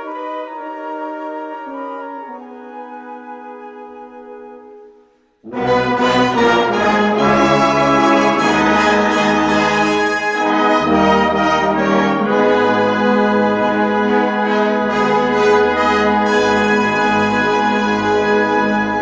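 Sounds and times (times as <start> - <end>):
soft woodwind note: 0.0 - 19.0
brass band playing chords: 5.4 - 19.0.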